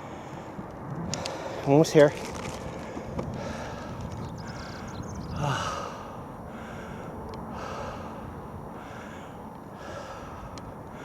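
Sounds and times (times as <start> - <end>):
man breathing hard: 0.0 - 1.6, 2.6 - 11.0
man gasping: 4.6 - 11.0.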